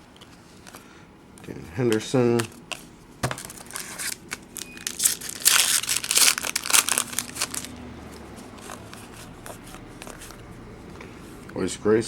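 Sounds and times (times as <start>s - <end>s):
foil wrapper crinkling and tearing: 3.4s - 7.8s.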